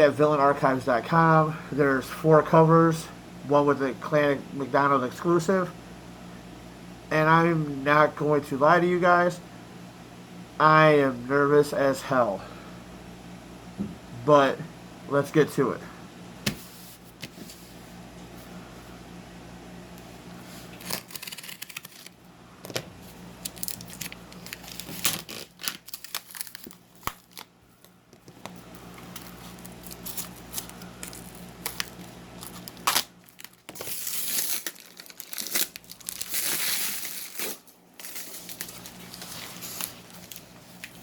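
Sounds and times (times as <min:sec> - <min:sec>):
packaging crinkling: 0:20.5 - 0:41.0
tape and cardboard tearing: 0:20.7 - 0:22.2, 0:23.4 - 0:27.5, 0:29.0 - 0:40.4.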